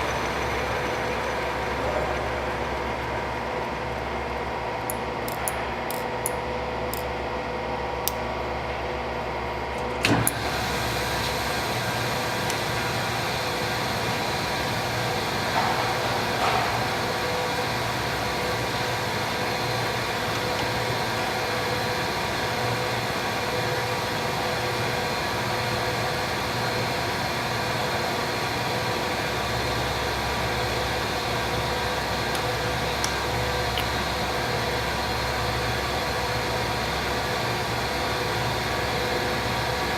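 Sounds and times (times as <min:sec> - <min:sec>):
lathe running with hum and whine: 0:00.0 - 0:39.9
machine clunk: 0:15.5 - 0:17.2.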